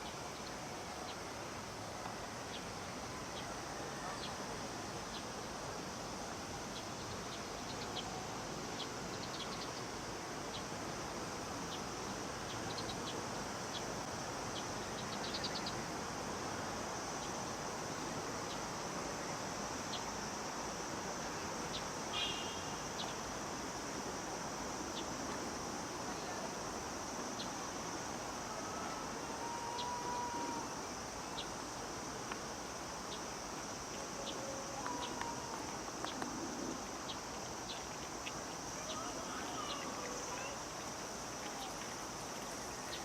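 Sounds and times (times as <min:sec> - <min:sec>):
cicadas droning: 0:00.0 - 0:43.0
low background noise: 0:00.0 - 0:43.0.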